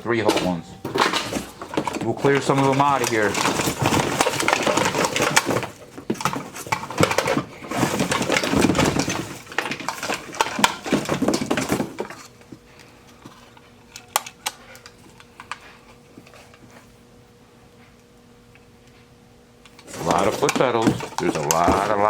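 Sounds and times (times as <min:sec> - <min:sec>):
metal parts clattering in a box: 0:00.1 - 0:12.3, 0:19.8 - 0:22.0.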